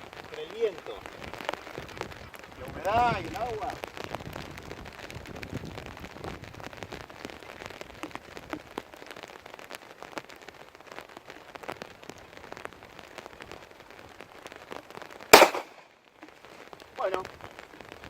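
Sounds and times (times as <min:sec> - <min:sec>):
rain falling: 0:00.0 - 0:18.0
raindrops ticking near microphone: 0:00.0 - 0:18.0.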